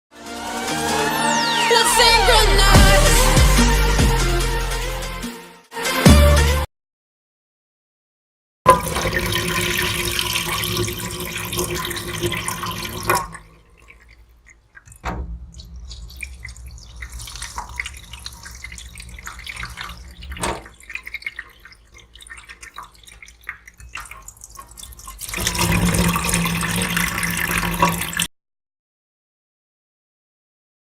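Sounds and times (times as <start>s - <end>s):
tap water running into sink: 8.7s - 28.3s
water dripping and splashing: 8.7s - 28.3s.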